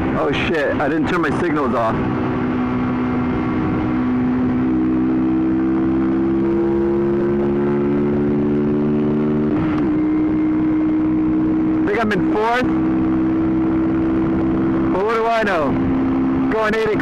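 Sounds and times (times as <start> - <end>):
wind noise on microphone: 1.0 - 11.8.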